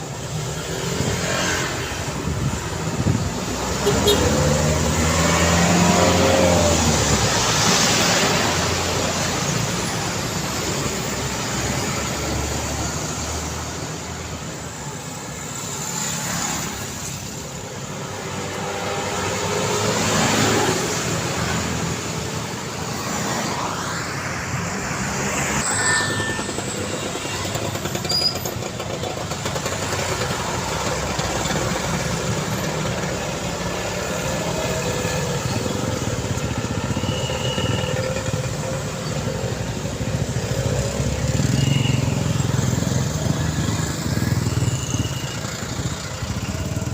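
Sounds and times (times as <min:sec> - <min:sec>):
cars passing by: 0:00.0 - 0:46.9
motorcycles passing by: 0:00.0 - 0:46.9
steady engine hum: 0:42.2 - 0:46.9.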